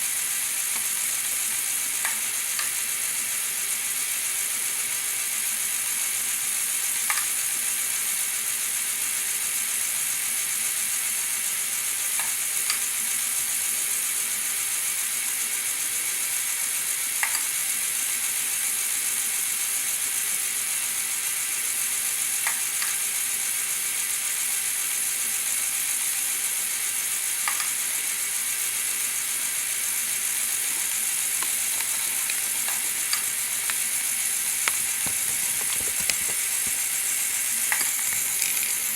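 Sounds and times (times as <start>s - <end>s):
whirr of small motors and gears: 0.0s - 38.9s.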